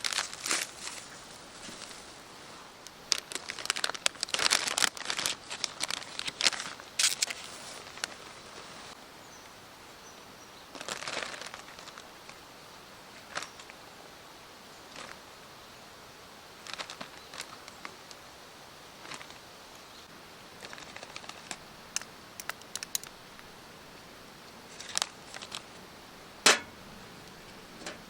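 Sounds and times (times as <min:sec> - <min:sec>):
crinkling and rustling handling noise: 0:00.0 - 0:09.0, 0:10.7 - 0:12.4, 0:20.5 - 0:28.0.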